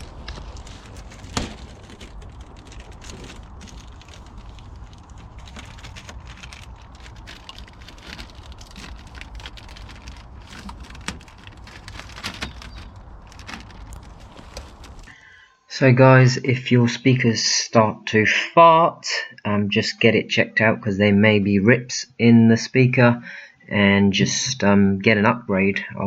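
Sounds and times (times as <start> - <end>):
sharp clicks and crackles: 0.0 - 15.2.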